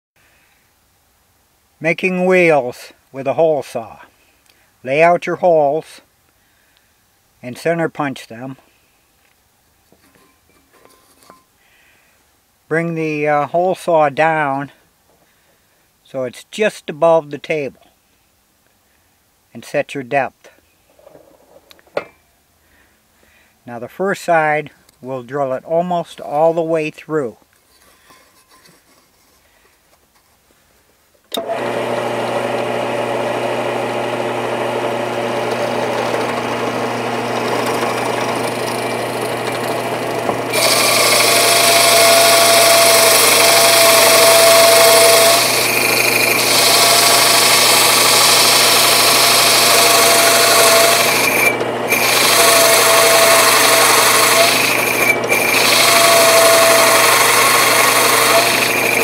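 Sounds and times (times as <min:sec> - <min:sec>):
drill press motor running: 0:31.4 - 0:59.0
hole saw cutting wood: 0:31.4 - 0:59.0.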